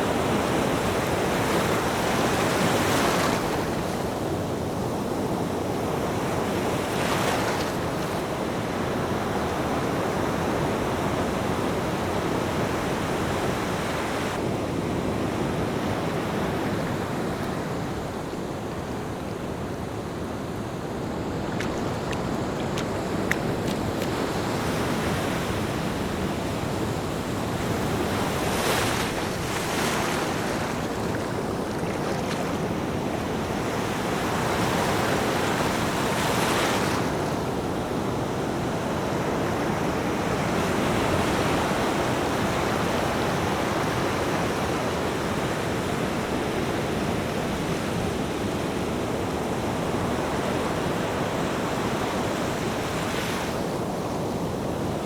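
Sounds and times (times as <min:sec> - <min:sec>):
ocean waves rushing: 0:20.7 - 0:37.2
wave breaking and washing up: 0:21.0 - 0:37.2.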